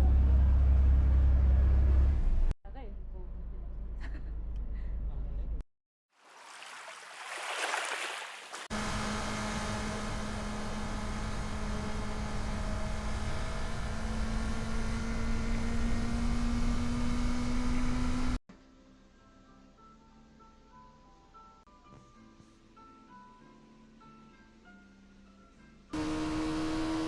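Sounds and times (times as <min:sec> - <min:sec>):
road noise: 0:08.7 - 0:18.4, 0:26.0 - 0:27.0
motorcycle engine running: 0:08.8 - 0:18.4.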